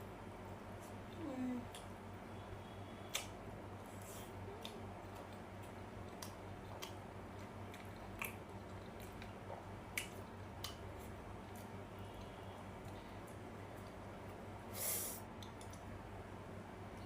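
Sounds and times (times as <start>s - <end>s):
steady low hum: 0.0s - 17.0s
person chewing dumplings: 3.8s - 14.0s.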